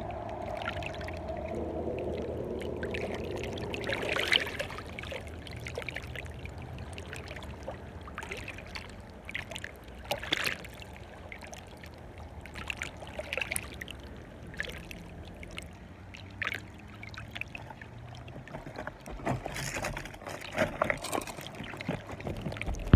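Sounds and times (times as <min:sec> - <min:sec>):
low hum: 0:00.0 - 0:08.2
water lapping at shoreline: 0:00.0 - 0:22.9.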